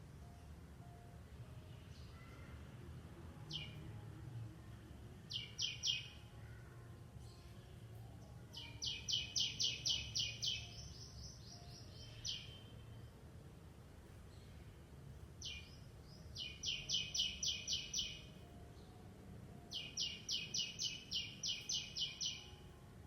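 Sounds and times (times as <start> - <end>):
bird chirping: 3.5 - 3.9, 5.3 - 6.6, 8.5 - 13.2, 15.4 - 19.0, 19.7 - 22.7.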